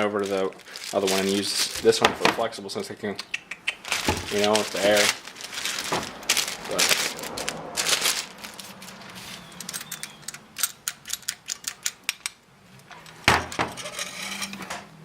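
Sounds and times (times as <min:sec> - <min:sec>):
rustling: 0:00.0 - 0:02.9, 0:03.7 - 0:10.8
metal and plastic clicks: 0:09.5 - 0:13.6.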